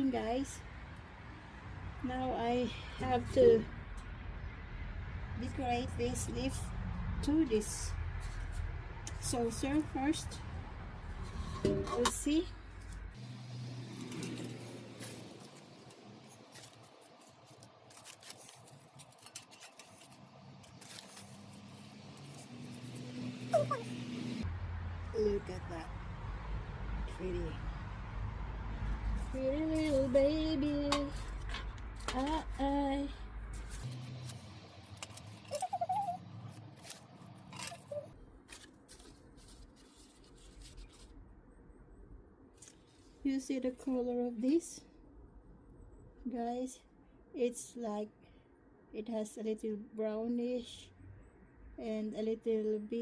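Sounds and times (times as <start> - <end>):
hands rustling dried leaves: 13.6 - 24.0, 33.5 - 41.1.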